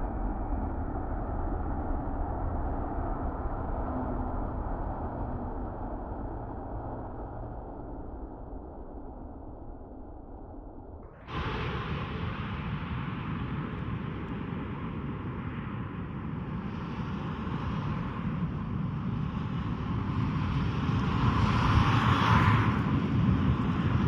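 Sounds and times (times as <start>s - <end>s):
jet engine roar: 11.1s - 24.0s.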